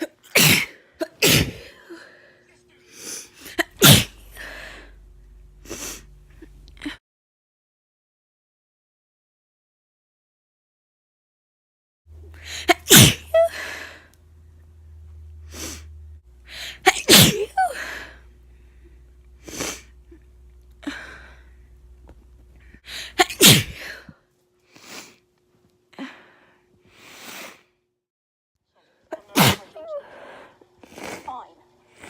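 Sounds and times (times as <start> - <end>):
person sneezing: 0.0 - 1.8, 3.0 - 4.5, 12.4 - 14.0, 16.5 - 18.2, 23.0 - 24.1, 29.1 - 31.4.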